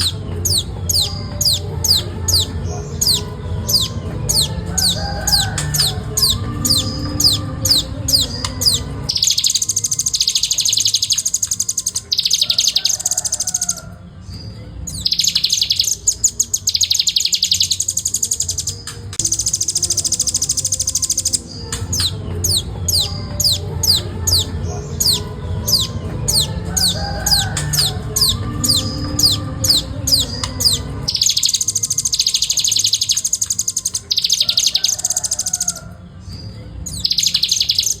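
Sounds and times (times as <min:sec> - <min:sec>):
nuthatch singing buzzy trills: 0:00.0 - 0:38.0.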